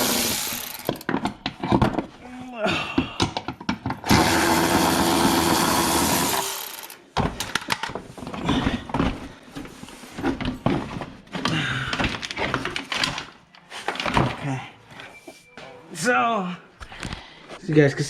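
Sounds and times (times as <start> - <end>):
power drill spinning: 0.0 - 1.1, 4.0 - 7.0
knocks and clatter of parts: 0.0 - 2.2, 2.9 - 4.1, 6.3 - 14.5.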